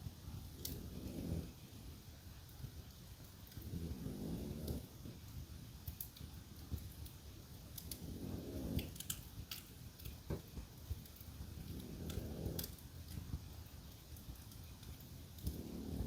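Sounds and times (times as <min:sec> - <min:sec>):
wood fire crackling and popping: 0:00.0 - 0:16.0
dog snoring: 0:00.6 - 0:01.6, 0:03.6 - 0:04.9, 0:08.0 - 0:09.0, 0:11.6 - 0:12.8, 0:15.5 - 0:16.0.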